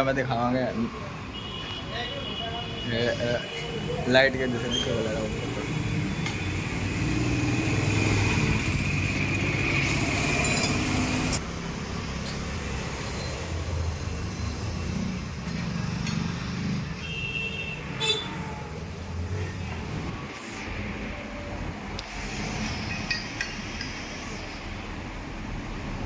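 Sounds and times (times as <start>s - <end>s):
vehicle noise: 0.0s - 26.0s.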